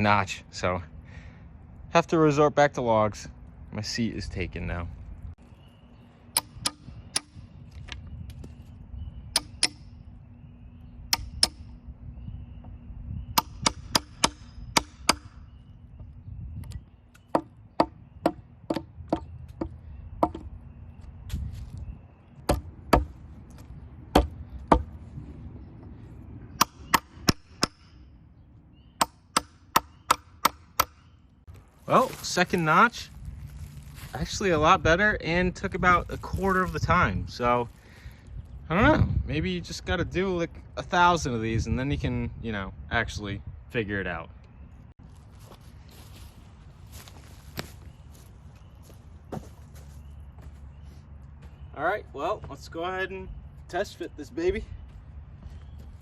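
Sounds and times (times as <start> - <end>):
metal chisel struck into log: 6.3 - 7.4, 9.3 - 9.9, 11.1 - 11.7, 13.4 - 15.4, 16.6 - 20.5, 24.1 - 24.9, 29.0 - 31.1.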